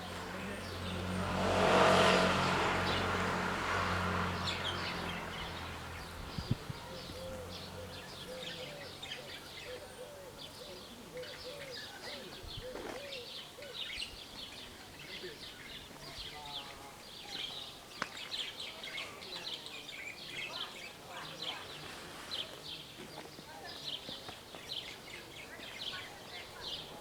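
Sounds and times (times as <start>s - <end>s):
vehicle engine passing: 0.0s - 9.4s
birds chirping: 0.0s - 27.0s.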